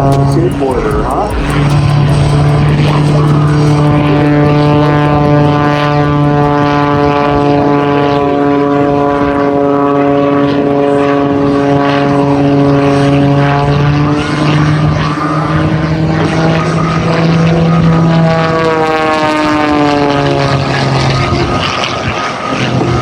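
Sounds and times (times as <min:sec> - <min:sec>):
propeller plane engine droning: 0:00.0 - 0:23.0.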